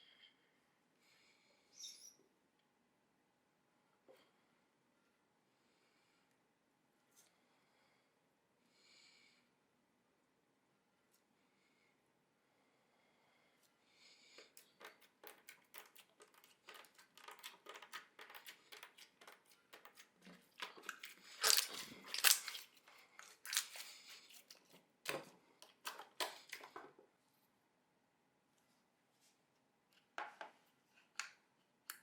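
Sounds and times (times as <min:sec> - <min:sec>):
slime crackling and popping: 0:20.6 - 0:24.0.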